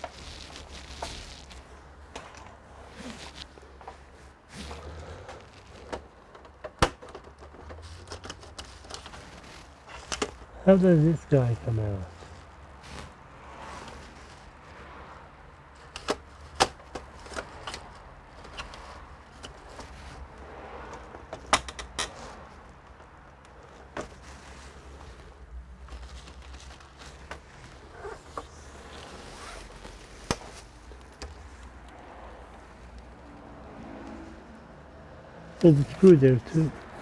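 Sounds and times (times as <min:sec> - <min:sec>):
clicks and knocks of handling plastic parts: 0:05.3 - 0:10.5, 0:15.8 - 0:20.2, 0:20.9 - 0:23.1.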